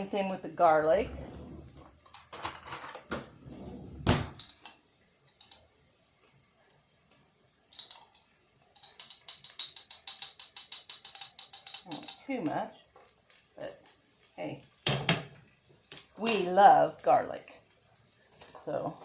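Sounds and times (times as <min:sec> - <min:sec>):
metal spoon clinking: 0:08.8 - 0:12.2.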